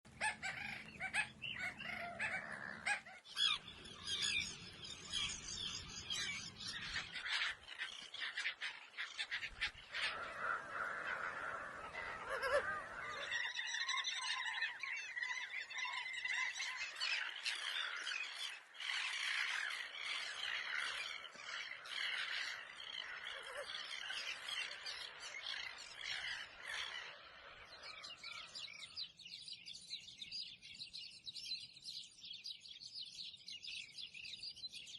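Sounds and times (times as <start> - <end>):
small birds chirping: 0.1 - 34.9.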